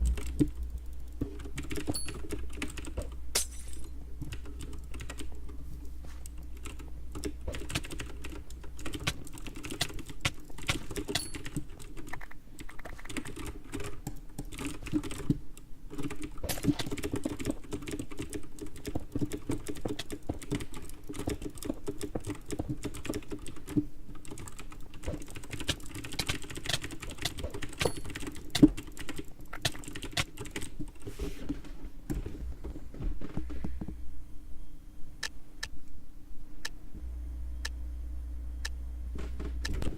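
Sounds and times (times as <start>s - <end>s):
keyboard typing: 0.0s - 3.2s, 4.2s - 5.4s, 6.2s - 30.9s
low steady hum: 0.0s - 39.9s.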